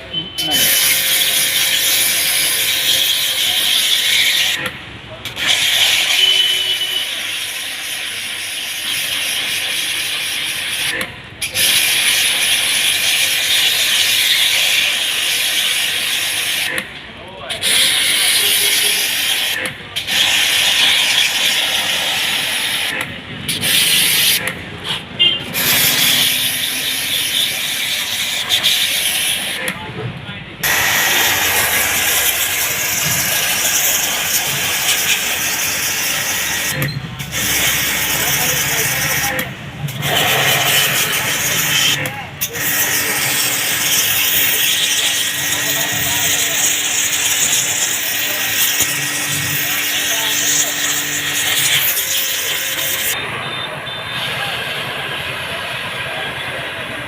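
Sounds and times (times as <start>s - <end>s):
water jet spraying: 0.5s - 4.7s, 5.3s - 16.8s, 17.5s - 29.8s, 30.6s - 53.2s
pressure washer motor running: 0.5s - 16.9s, 17.5s - 29.8s, 30.6s - 53.6s.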